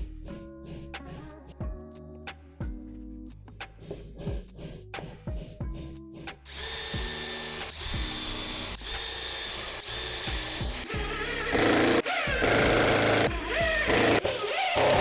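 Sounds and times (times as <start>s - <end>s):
background music: 0.0s - 15.0s
power tool whining: 6.5s - 15.0s.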